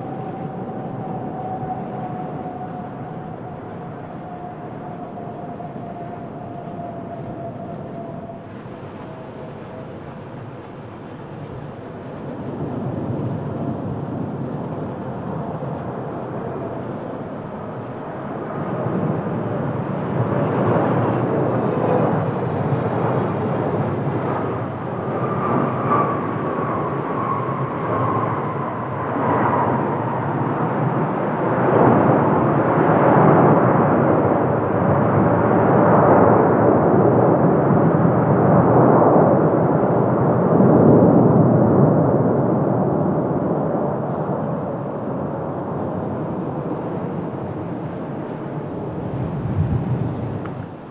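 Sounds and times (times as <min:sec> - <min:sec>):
engine whine sliding down: 0:00.0 - 0:18.2
jet engines on approach: 0:00.0 - 0:50.9.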